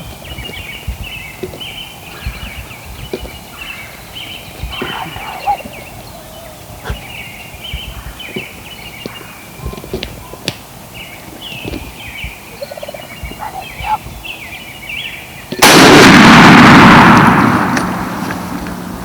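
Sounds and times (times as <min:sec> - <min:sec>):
faint bird calls: 0:00.0 - 0:15.6
shotgun blast: 0:15.5 - 0:19.0.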